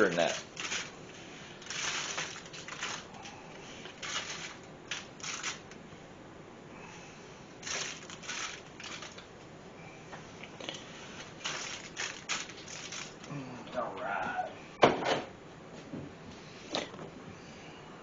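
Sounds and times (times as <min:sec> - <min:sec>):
sugar scraping and rustling: 0:00.0 - 0:05.8, 0:07.6 - 0:09.2, 0:10.7 - 0:13.3.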